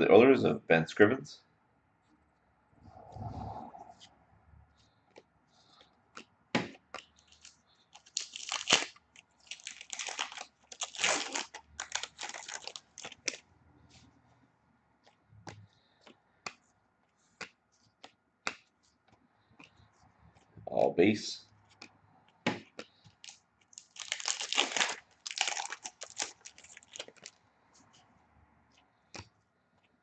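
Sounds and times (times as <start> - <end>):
foil wrapper tearing and crinkling: 7.3 - 13.4, 23.2 - 27.3.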